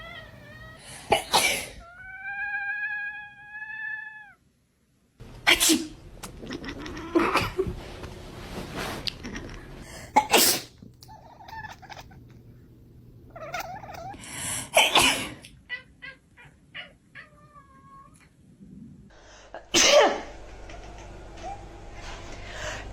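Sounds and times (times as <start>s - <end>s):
cats meowing: 0.0s - 1.1s, 1.8s - 4.4s, 6.2s - 7.7s, 11.0s - 12.4s, 13.3s - 14.2s, 15.5s - 18.3s.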